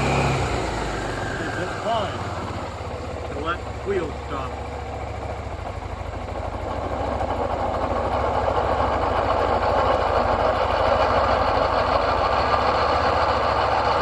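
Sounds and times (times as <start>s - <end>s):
scooter engine idling: 0.0s - 14.0s.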